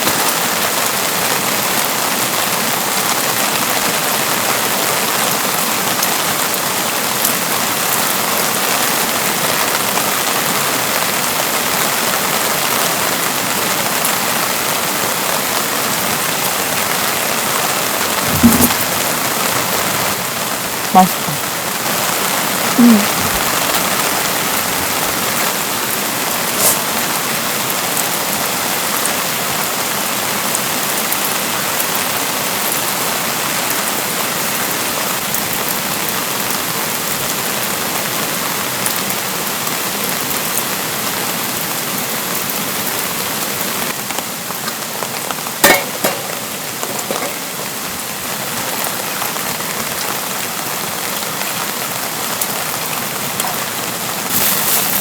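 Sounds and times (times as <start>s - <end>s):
steady rain falling: 0.0s - 55.0s
sharp knocks: 18.3s - 18.9s.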